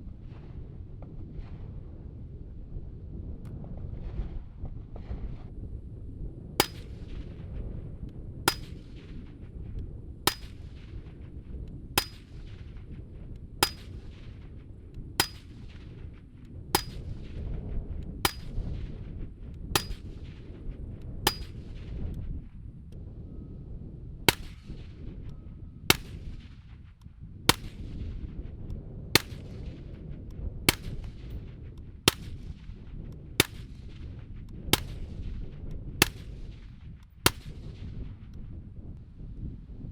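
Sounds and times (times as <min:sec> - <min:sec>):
low wind rumble: 0:00.0 - 0:39.9
suppressed rifle shots: 0:06.6 - 0:07.5, 0:08.4 - 0:09.5, 0:10.2 - 0:11.2, 0:12.0 - 0:12.9, 0:13.6 - 0:14.5, 0:15.1 - 0:17.5, 0:18.1 - 0:19.0, 0:19.7 - 0:20.6, 0:21.3 - 0:21.9, 0:24.3 - 0:25.0, 0:25.9 - 0:26.6, 0:27.5 - 0:28.0, 0:29.2 - 0:29.9, 0:30.7 - 0:32.8, 0:33.4 - 0:35.4, 0:36.0 - 0:38.0.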